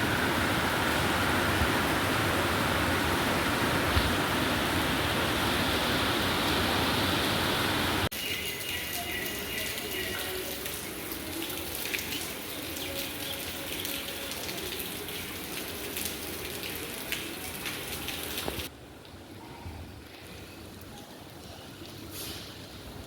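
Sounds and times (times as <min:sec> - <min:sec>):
steady rain: 0:00.0 - 0:23.0
water dripping and splashing: 0:03.6 - 0:19.3.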